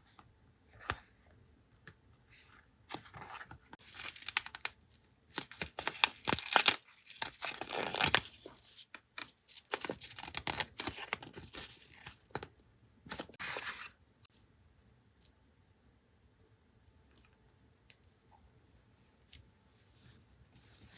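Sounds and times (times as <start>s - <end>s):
paper tearing and crinkling: 5.4s - 8.4s.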